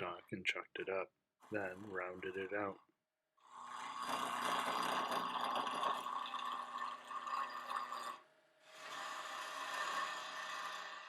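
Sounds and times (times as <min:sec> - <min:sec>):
wood lathe gouge cutting hiss: 0:08.7 - 0:11.0.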